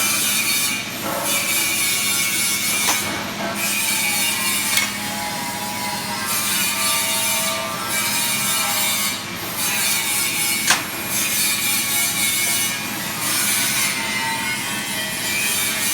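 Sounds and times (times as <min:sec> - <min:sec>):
rasping on stainless steel: 0:03.8 - 0:05.7, 0:08.5 - 0:12.7
sharp click: 0:10.6 - 0:11.0.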